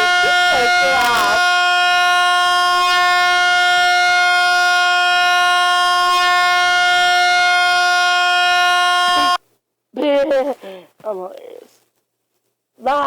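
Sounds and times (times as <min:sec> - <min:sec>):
air horn blast: 0:00.0 - 0:09.4.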